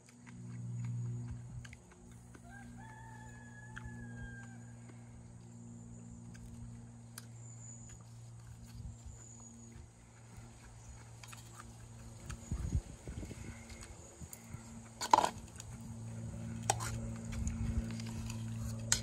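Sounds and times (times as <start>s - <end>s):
steady low hum: 0.0s - 19.0s
rooster crowing: 2.3s - 5.1s.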